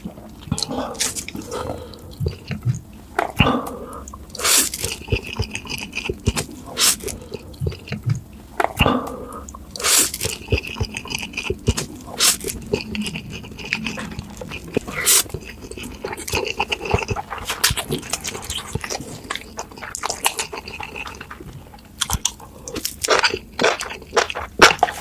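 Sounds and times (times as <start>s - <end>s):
wet chewing: 0.0s - 25.0s
slurping noodles: 3.2s - 7.6s, 8.7s - 21.8s.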